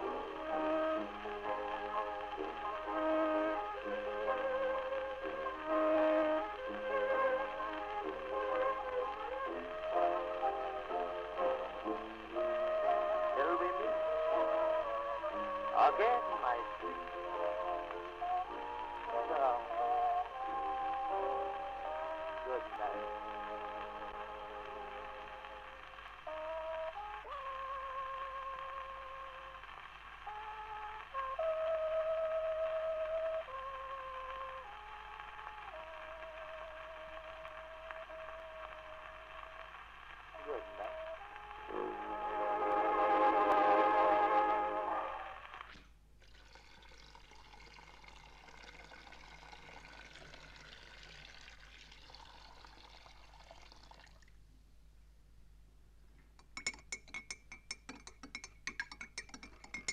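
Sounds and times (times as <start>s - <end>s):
faint crackling hiss: 0.0s - 59.9s
slow held harmony notes: 40.4s - 45.6s.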